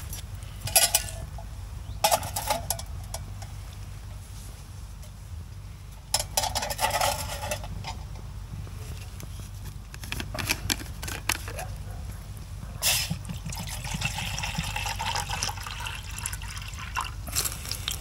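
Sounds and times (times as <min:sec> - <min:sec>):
water pouring: 0:13.2 - 0:18.0.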